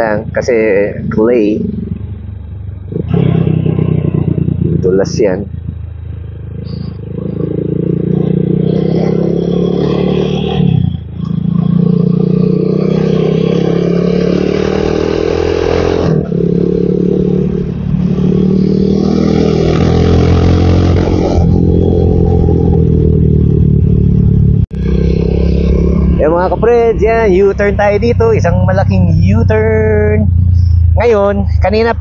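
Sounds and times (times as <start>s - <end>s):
motorcycle engine running: 0.0s - 32.0s
wind and road noise: 0.0s - 32.0s.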